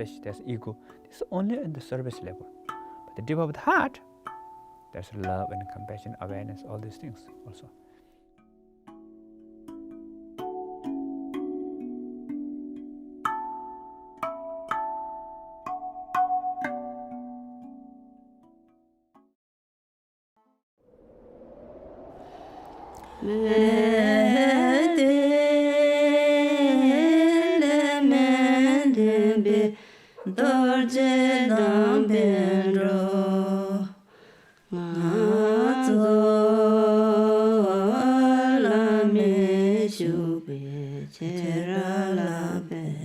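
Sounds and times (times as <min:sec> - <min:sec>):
person chanting: 0:22.4 - 0:34.0, 0:34.7 - 0:43.0.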